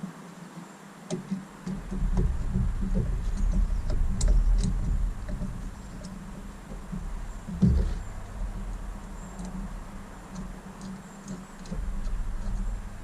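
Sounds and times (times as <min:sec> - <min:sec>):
small clicks and taps: 0:01.1 - 0:09.7
low handling rumble: 0:01.4 - 0:13.0.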